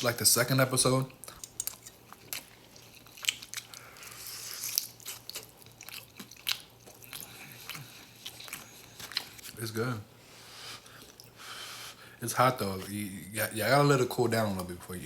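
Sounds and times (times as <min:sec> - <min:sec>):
chewing rice: 0:01.1 - 0:09.6.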